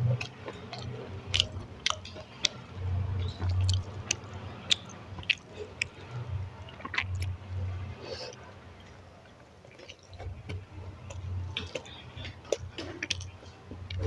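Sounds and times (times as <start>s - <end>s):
chewing food: 0.0s - 14.0s
wet mouth clicks and smacks: 0.2s - 2.6s, 3.2s - 6.0s.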